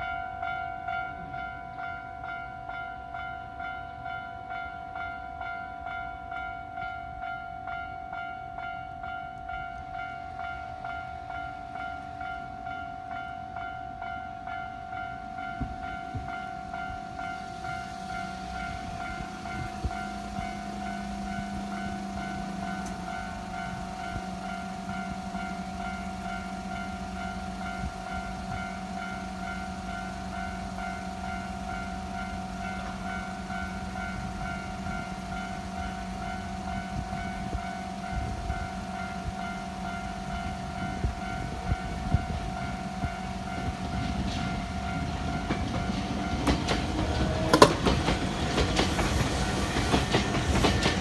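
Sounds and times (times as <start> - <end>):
level-crossing warning bell ringing: 0.0 - 51.0
train rumbling over crossing: 0.0 - 51.0
train wheel clacks: 15.0 - 51.0.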